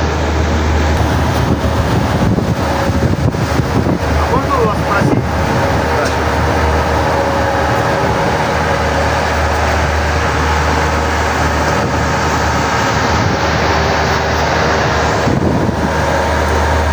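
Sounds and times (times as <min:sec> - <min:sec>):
waves washing on shore: 0:00.0 - 0:16.9
wind buffeting microphone: 0:00.0 - 0:16.9.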